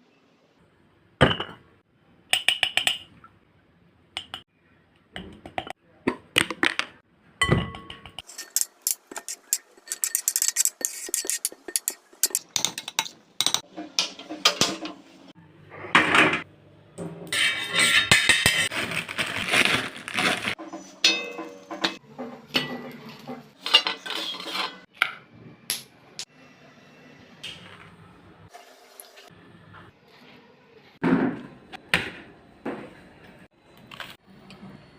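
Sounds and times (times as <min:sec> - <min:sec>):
utensils and dishes clinking: 0:07.4 - 0:15.0, 0:16.0 - 0:26.0
scraping on dishes: 0:08.2 - 0:15.0, 0:17.3 - 0:18.8, 0:20.2 - 0:24.9.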